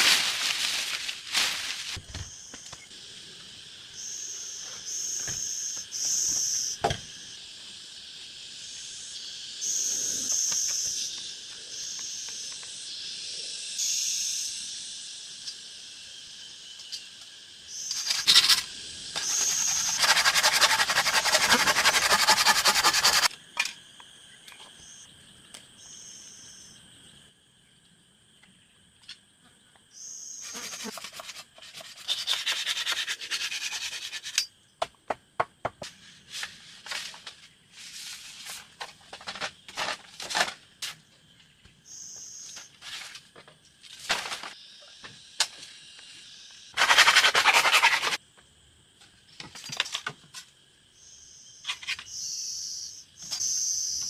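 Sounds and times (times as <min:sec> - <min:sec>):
high-pitched insect drone: 0:00.0 - 0:27.3, 0:29.9 - 0:34.6, 0:41.8 - 0:42.8, 0:50.9 - 0:54.0
insects chirping: 0:00.0 - 0:54.0
rapidly pulsing insect buzz: 0:17.7 - 0:23.3, 0:30.2 - 0:34.4.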